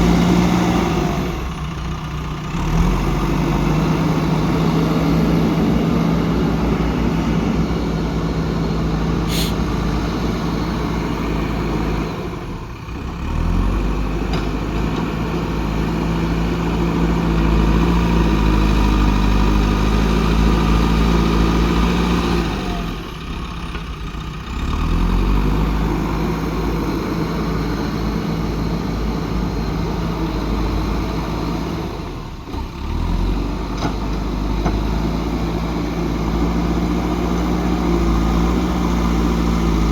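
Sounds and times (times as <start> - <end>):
diesel engine under hydraulic load: 0.0 - 39.9
short hiss: 9.3 - 9.6.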